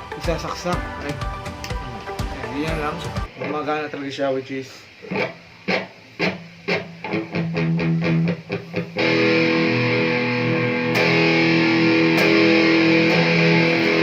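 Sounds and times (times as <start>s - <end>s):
guitar plucked notes and strums: 0.0s - 3.4s, 5.0s - 14.0s
guitar chord ringing: 5.1s - 14.0s.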